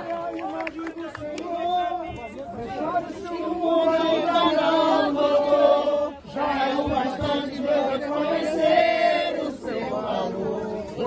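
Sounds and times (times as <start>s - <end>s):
crowd singing in unison: 0.0s - 11.0s.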